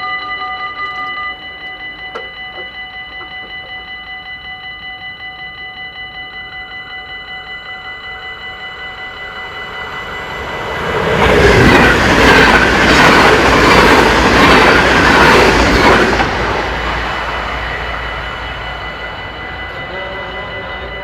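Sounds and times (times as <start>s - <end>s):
crossing warning bell ringing: 0.0s - 21.0s
train passing: 7.6s - 21.0s.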